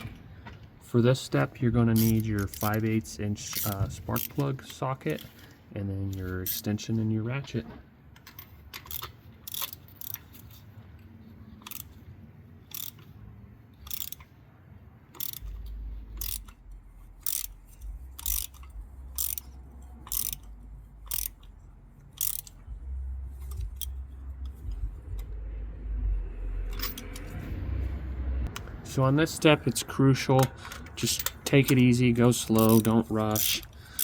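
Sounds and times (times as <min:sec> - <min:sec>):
ratchet clicking: 0:01.9 - 0:05.5, 0:08.2 - 0:10.7, 0:11.6 - 0:12.0, 0:12.6 - 0:14.4, 0:15.1 - 0:25.4, 0:26.6 - 0:27.4, 0:30.4 - 0:34.0
low rumble: 0:15.4 - 0:29.0.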